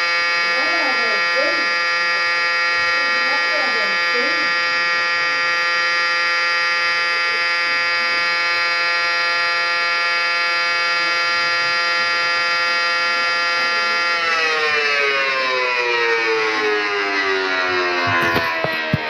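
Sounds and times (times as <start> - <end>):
warning siren winding down: 0.0 - 19.0.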